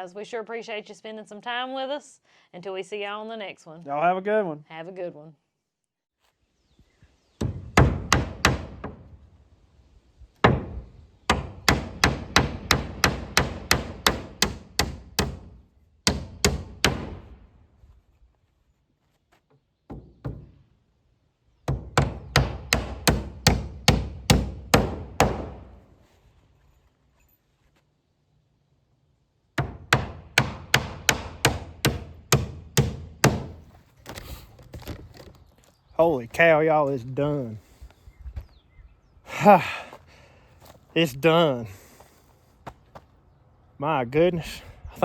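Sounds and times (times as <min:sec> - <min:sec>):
hammer driving nails into wood: 0:07.4 - 0:09.1, 0:10.4 - 0:17.4, 0:21.7 - 0:25.8, 0:29.6 - 0:35.4.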